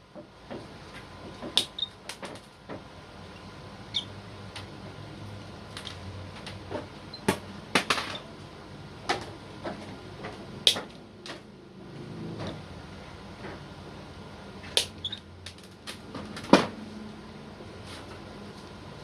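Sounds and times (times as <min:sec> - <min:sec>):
clicks from handling wire and tools: 0:14.7 - 0:16.5.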